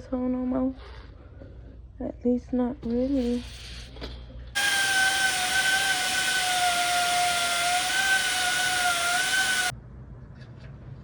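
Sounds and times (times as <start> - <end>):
grinder whining on metal: 4.6 - 9.7.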